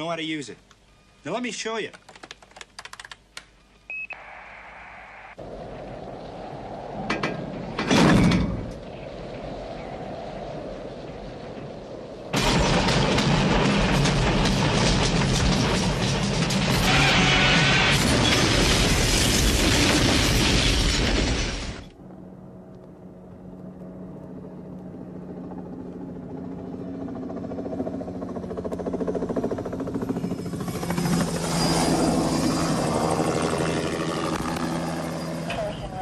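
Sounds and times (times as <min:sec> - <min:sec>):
train rushing along track: 0:13.9 - 0:18.6
helicopter rotor and engine drone: 0:21.9 - 0:36.0.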